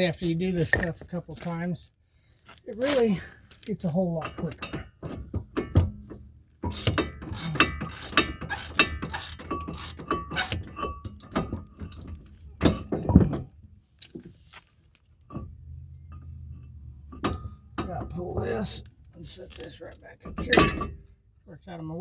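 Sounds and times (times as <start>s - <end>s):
heavy metal knocks: 4.2s - 13.7s, 15.3s - 18.8s.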